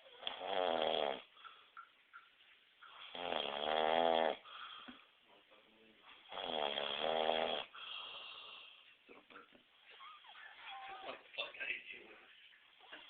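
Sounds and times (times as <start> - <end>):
man snoring loudly: 0.2 - 1.3, 3.1 - 4.5, 6.3 - 8.4.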